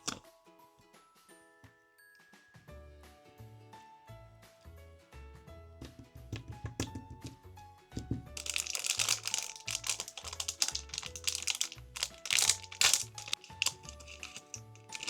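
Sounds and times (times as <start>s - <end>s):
packaging crinkling by hand: 0.0s - 0.2s, 8.4s - 15.0s.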